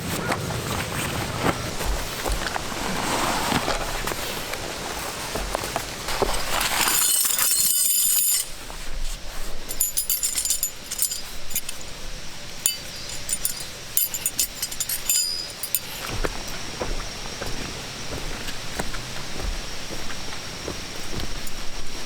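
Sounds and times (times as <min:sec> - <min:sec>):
handling rustle: 0:00.0 - 0:22.0
light clicks and clinks: 0:06.4 - 0:08.9, 0:09.6 - 0:16.7.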